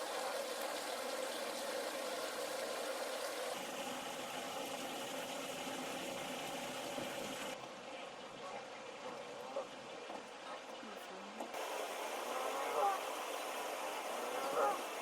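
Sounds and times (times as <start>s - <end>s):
running water splashing: 11.6s - 15.0s.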